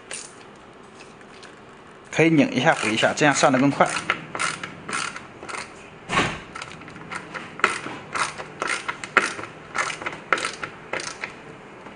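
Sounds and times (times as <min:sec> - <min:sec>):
ratchet screwdriver clicking: 0:02.6 - 0:05.7, 0:06.6 - 0:11.3.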